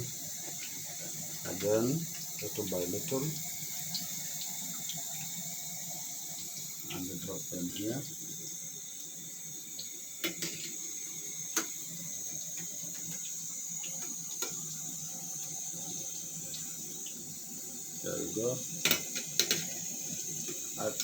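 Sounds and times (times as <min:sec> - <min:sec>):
fries sizzling in hot oil: 0:00.0 - 0:21.0.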